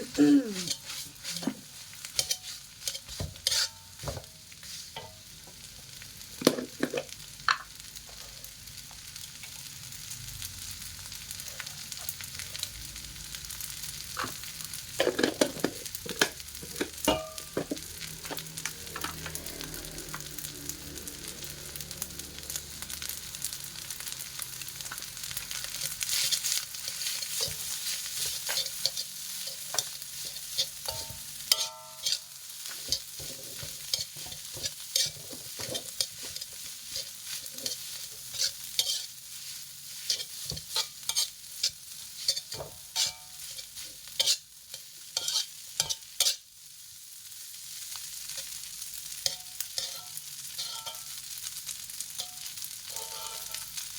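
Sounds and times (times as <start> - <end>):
spatula scraping a pan: 0.0 - 5.3, 25.7 - 46.4, 49.2 - 51.4, 52.1 - 53.9
rice sizzling in a frying pan: 0.0 - 53.9.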